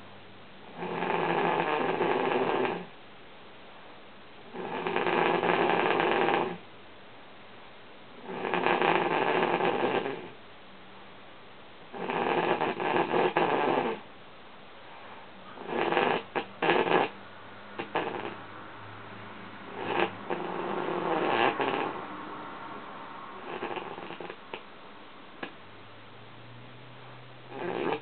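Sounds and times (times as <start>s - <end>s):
woman snoring: 0.7s - 2.9s, 4.5s - 6.6s, 8.2s - 10.4s, 12.0s - 14.0s, 15.6s - 17.2s, 17.8s - 18.4s, 19.7s - 22.0s, 23.4s - 24.6s, 27.5s - 28.0s.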